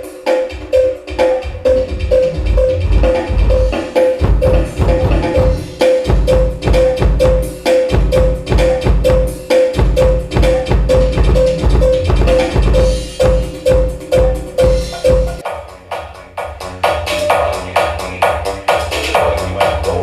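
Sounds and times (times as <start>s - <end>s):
loud music with heavy bass: 0.0s - 20.0s.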